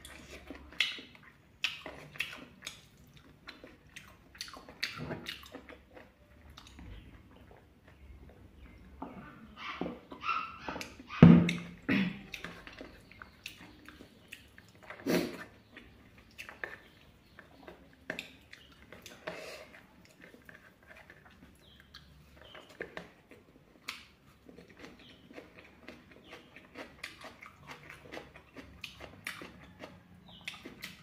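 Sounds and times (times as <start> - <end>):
person chewing food: 0.0 - 31.0
loud knock: 11.2 - 11.6.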